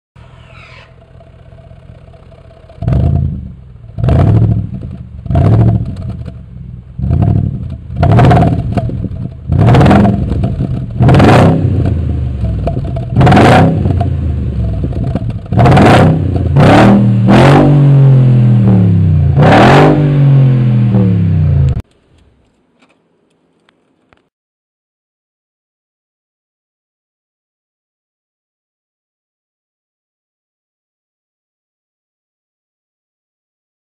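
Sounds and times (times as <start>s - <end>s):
car engine idling and revving: 0.2s - 21.8s.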